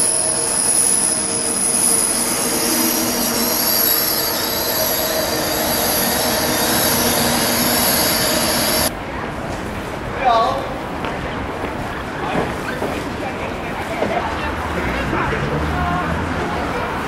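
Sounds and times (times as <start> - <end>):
train wheels squealing: 0.0 - 8.9
train rumble: 0.0 - 17.0.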